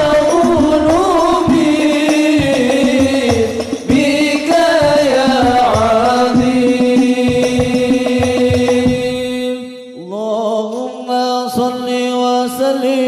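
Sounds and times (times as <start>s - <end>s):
low percussion beat: 0.0s - 9.4s
person singing ornamented melody: 0.0s - 13.0s.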